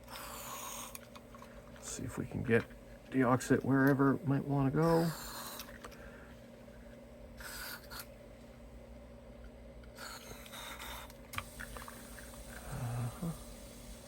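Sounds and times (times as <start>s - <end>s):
aerosol spray hissing: 11.4s - 14.0s.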